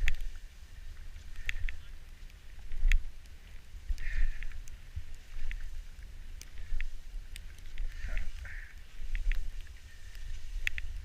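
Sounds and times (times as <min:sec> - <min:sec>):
snow scraping hiss: 0:00.0 - 0:11.0
sharp ticks: 0:01.3 - 0:04.8.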